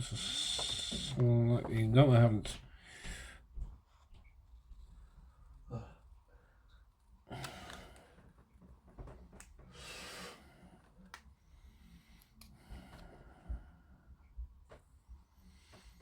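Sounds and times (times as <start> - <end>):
close breathing: 2.6 - 3.8, 9.6 - 14.4.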